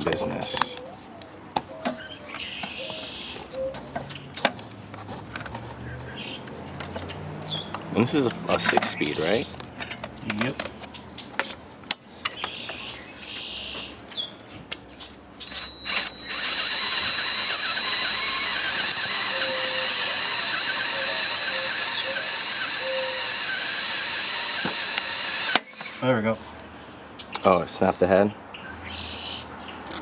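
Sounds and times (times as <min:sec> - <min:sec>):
power drill whining: 0:15.4 - 0:26.1.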